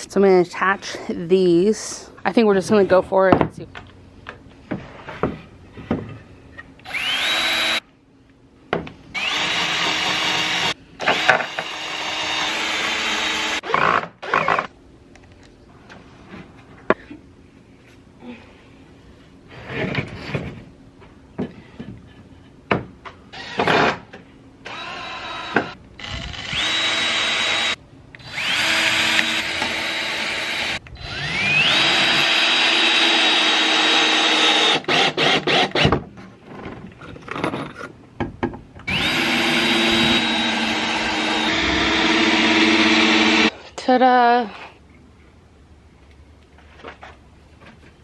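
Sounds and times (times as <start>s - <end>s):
power drill driving screws: 6.8s - 7.8s, 9.2s - 14.7s, 24.7s - 35.9s, 38.9s - 43.5s.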